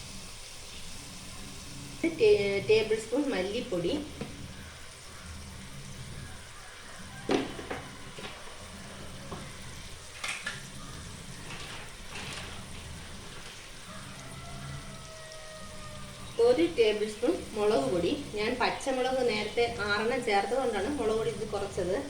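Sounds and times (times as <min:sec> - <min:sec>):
masala sizzling in a pan: 0:00.0 - 0:22.0
steady low hum: 0:00.0 - 0:22.0
spoon knocking and scraping pan: 0:04.0 - 0:04.5, 0:07.0 - 0:13.8.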